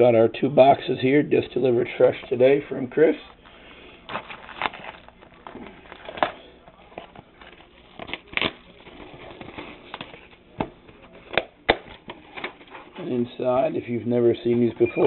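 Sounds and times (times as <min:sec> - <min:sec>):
packaging crinkling: 0:03.1 - 0:13.0
cards clicking and knocking: 0:09.3 - 0:12.8.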